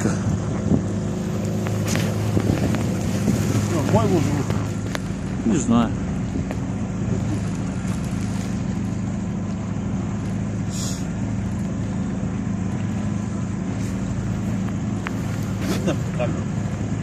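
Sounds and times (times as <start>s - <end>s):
boat engine humming: 0.0s - 17.0s
wind and water noise: 0.0s - 17.0s
brief hiss: 10.7s - 11.1s.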